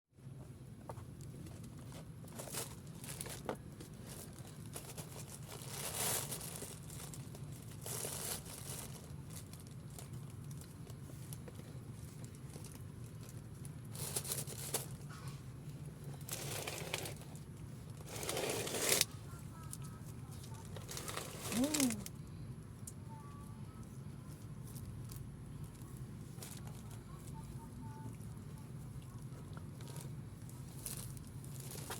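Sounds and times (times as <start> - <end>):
steady low hum: 0.2 - 31.9
cat rustling against a bucket: 1.0 - 15.4, 16.0 - 19.3.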